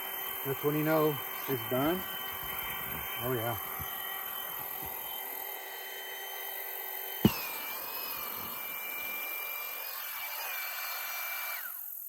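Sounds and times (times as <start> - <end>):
electric air pump whining: 0.0 - 12.0.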